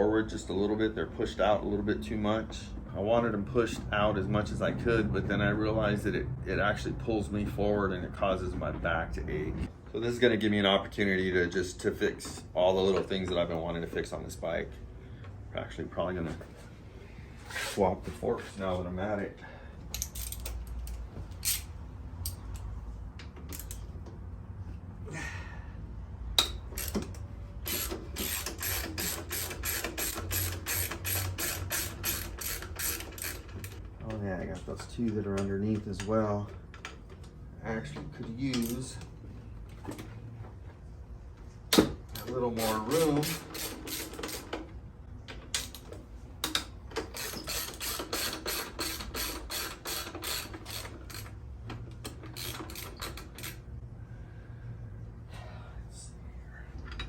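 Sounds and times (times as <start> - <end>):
ratchet wrench ratcheting: 19.9 - 22.7, 23.4 - 23.9, 26.4 - 33.8, 42.1 - 44.6, 46.4 - 53.8.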